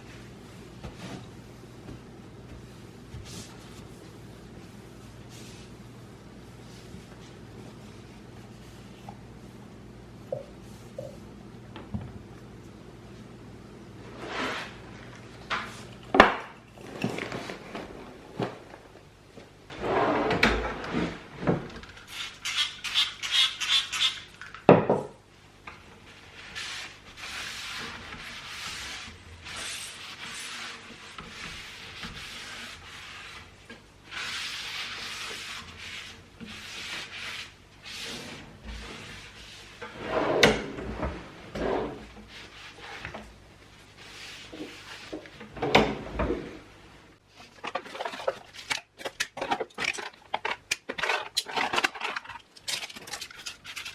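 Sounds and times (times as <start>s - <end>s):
surface being rubbed: 14.1s - 14.8s
household objects clattering: 47.5s - 53.9s.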